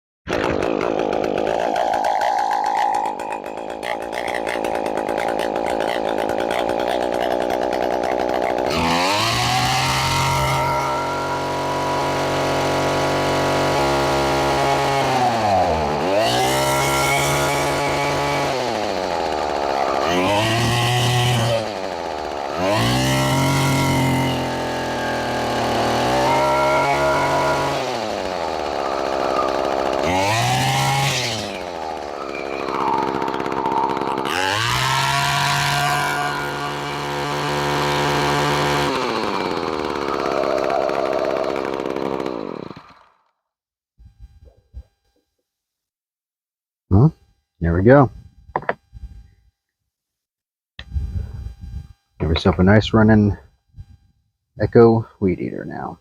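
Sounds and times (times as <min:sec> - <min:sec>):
string trimmer engine revving: 0:00.4 - 0:43.3.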